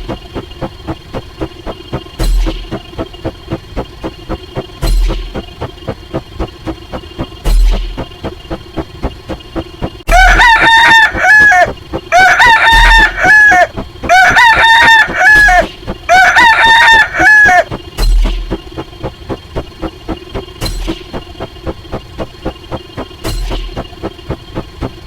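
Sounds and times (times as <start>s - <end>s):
rooster crowing: 10.1s - 17.7s.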